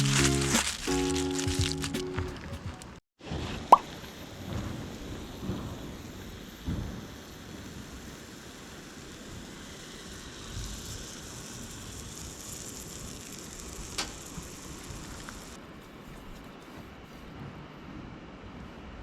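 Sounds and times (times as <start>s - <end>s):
campfire hissing: 0.0s - 1.9s, 3.7s - 15.6s
fire crack: 0.0s - 3.0s, 3.8s - 15.6s.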